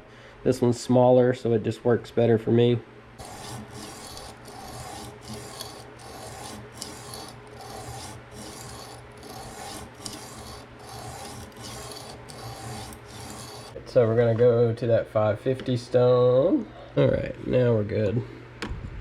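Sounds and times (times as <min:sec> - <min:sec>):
sharpening stone rasping on knife: 0:03.2 - 0:13.8.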